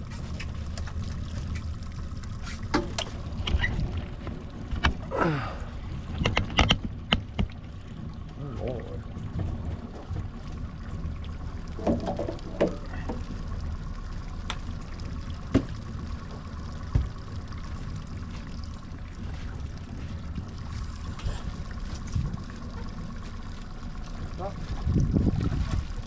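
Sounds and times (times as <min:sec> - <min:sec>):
outboard motor rumbling: 0:00.0 - 0:26.0
knocks on boat: 0:15.5 - 0:15.8, 0:16.9 - 0:17.2.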